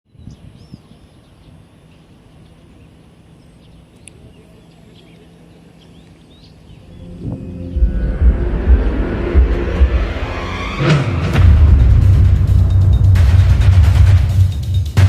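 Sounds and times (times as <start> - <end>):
small birds chirping: 0.1 - 8.3
low outdoor background hum: 0.1 - 15.0.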